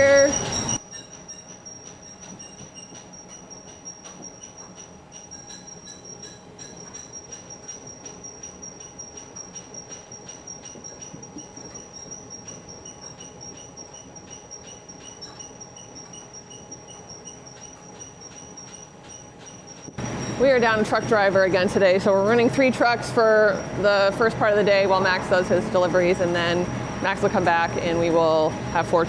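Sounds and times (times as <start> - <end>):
squeaking clicks: 0.0 - 20.4
conveyor machinery whine: 0.0 - 29.0.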